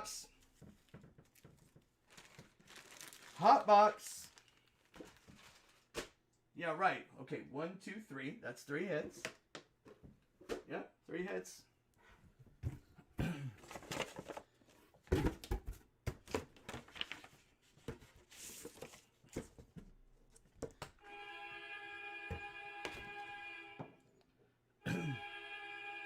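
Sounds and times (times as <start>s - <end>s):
packaging rustling: 0.8s - 3.4s, 4.1s - 6.0s, 13.6s - 14.8s, 16.3s - 19.6s
sustained musical chord: 21.0s - 24.0s, 24.9s - 26.0s.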